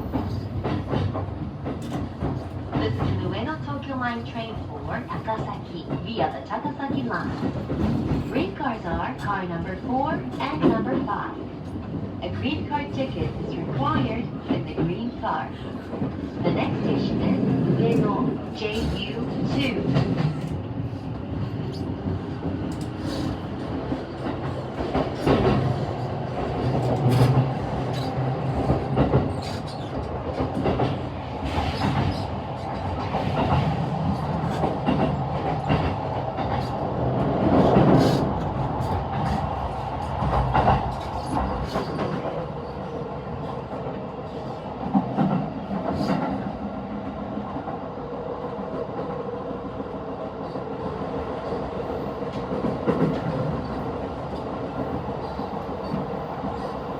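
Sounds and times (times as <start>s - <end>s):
train wheels rumbling on rail: 0.0s - 56.9s.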